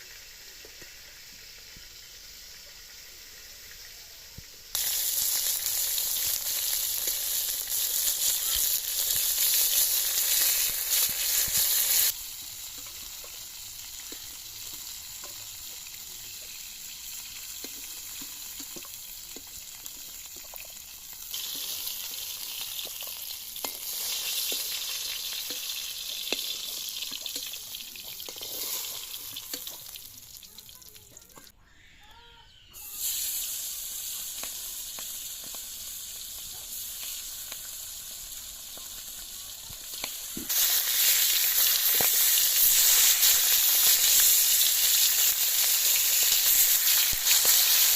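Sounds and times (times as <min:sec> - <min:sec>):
food sizzling in hot oil: 0:00.0 - 0:31.5, 0:32.8 - 0:47.9
stirring taps and scrapes: 0:17.6 - 0:20.8, 0:25.4 - 0:30.0.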